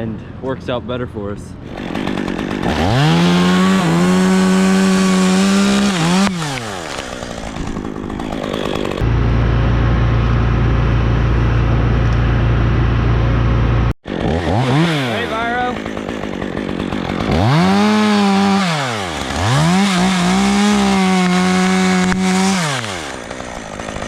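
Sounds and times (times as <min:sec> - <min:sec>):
chainsaw revving: 0:01.6 - 0:11.0, 0:13.4 - 0:24.0
loud steady low rumble: 0:09.0 - 0:14.0.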